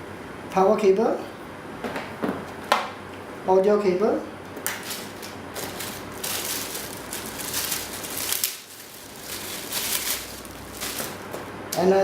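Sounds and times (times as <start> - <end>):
packaging rustling and crinkling: 4.7 - 11.5.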